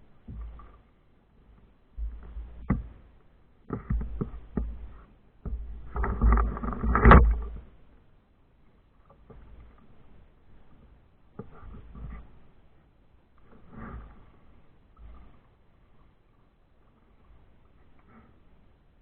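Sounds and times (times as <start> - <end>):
kayak gear knocking and scraping: 2.0 - 7.8.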